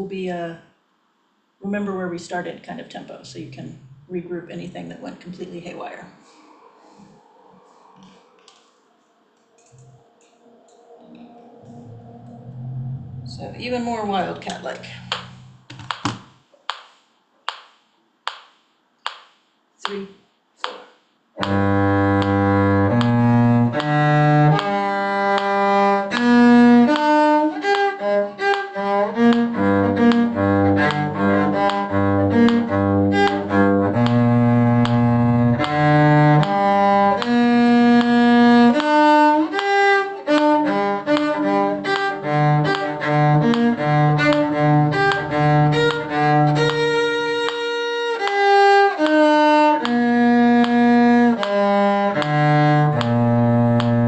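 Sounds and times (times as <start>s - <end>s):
bowed string ensemble playing: 21.4s - 54.0s.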